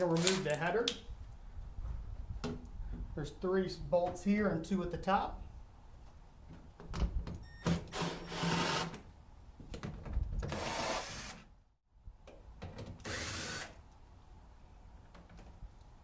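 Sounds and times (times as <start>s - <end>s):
power drill running: 7.9s - 9.0s, 10.6s - 11.4s, 13.0s - 13.8s.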